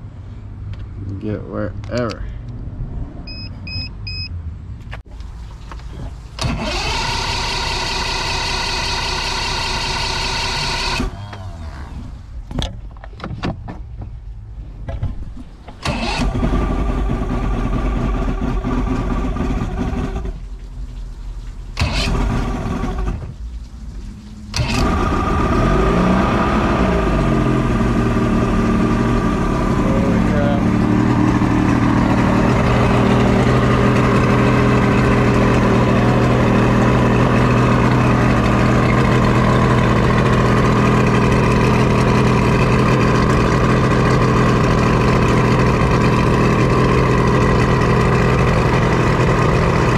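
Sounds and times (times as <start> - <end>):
boat engine starter cranking: 6.4 - 11.6, 15.7 - 20.4, 21.8 - 23.3, 24.5 - 25.9
speedboat engine running: 24.5 - 49.9.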